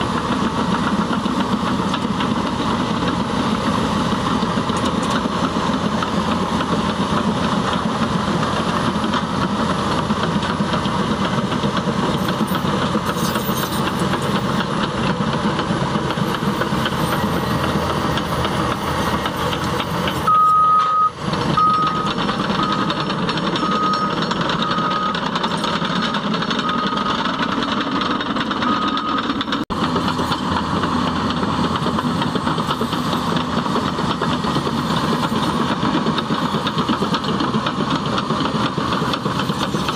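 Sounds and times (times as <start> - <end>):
bulldozer diesel engine running: 0.0 - 39.9
reversing alarm beeps: 20.2 - 25.4, 26.6 - 27.3, 28.6 - 29.3.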